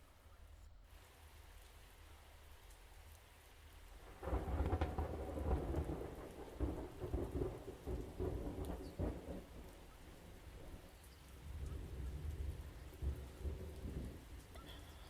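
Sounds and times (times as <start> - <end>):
rain falling steadily: 0.0 - 15.0
thunder clap rumbling: 4.0 - 15.0.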